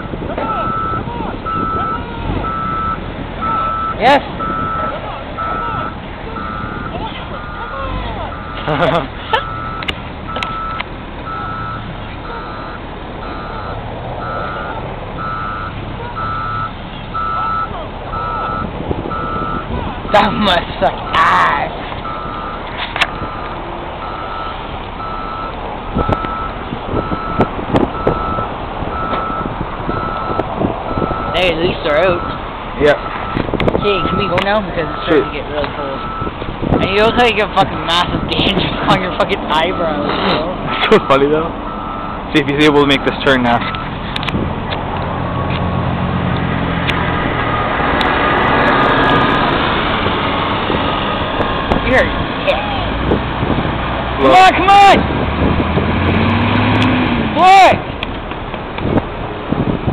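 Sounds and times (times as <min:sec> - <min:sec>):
vehicle reversing alarm beeping: 0:00.0 - 0:44.3, 0:47.4 - 0:47.8
bus diesel engine running: 0:00.0 - 0:59.9.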